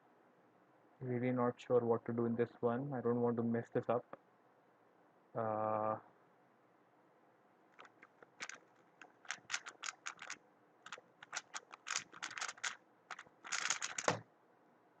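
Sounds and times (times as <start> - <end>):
puzzle cube clacking: 7.8 - 14.2.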